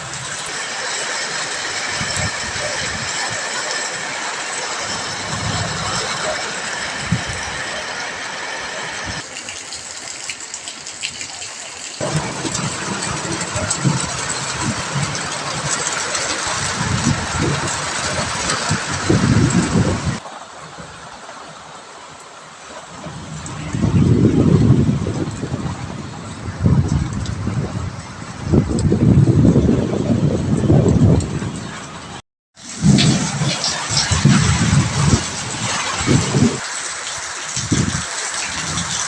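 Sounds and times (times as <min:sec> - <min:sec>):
wind gusts buffeting microphone: 0:00.0 - 0:09.2, 0:12.0 - 0:21.1, 0:22.9 - 0:39.0
wind and rain rushing: 0:00.0 - 0:39.0.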